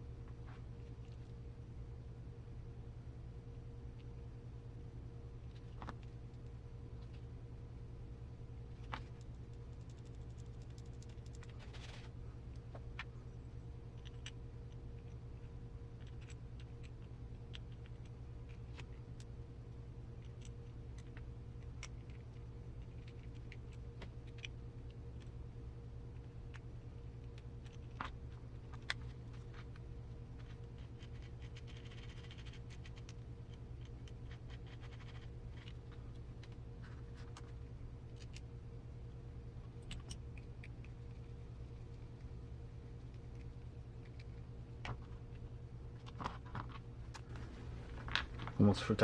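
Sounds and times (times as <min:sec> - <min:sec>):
low hum: 0:00.0 - 0:49.0
small parts clicking and tapping: 0:08.7 - 0:13.2, 0:13.9 - 0:25.4, 0:26.0 - 0:38.6, 0:39.6 - 0:42.3.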